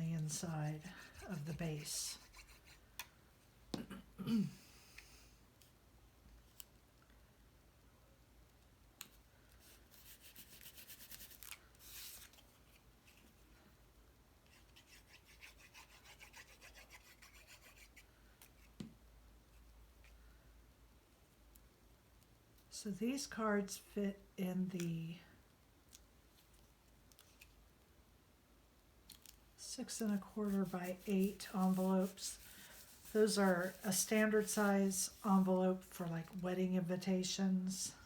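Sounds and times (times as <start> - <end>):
cardstock being folded: 30.1 - 34.5.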